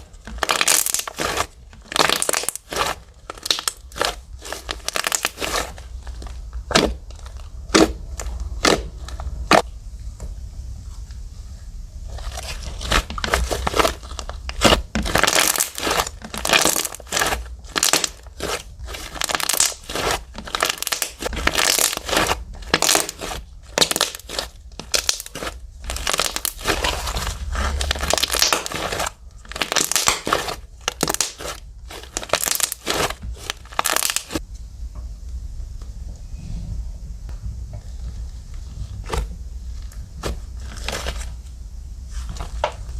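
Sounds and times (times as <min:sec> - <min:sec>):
slime crackling pops: 0:00.3 - 0:05.7, 0:12.8 - 0:27.0, 0:27.8 - 0:34.4.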